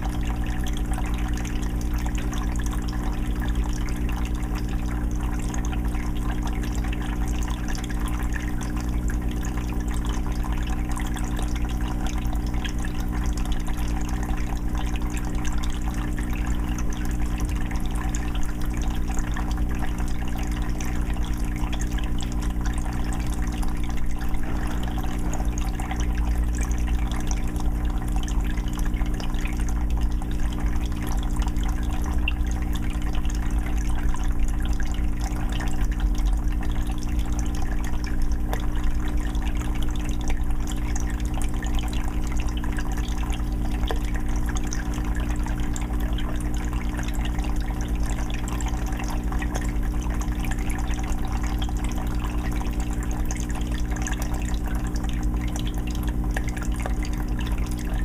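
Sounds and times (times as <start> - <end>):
aquarium filter water trickling: 0.0 - 58.0
low hum: 16.4 - 40.6, 55.9 - 58.0.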